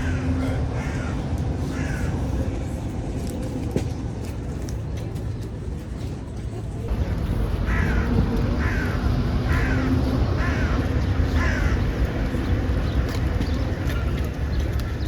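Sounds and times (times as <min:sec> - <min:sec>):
crow cawing: 0:00.0 - 0:02.1, 0:07.6 - 0:11.8
steady low rumble: 0:00.0 - 0:15.0.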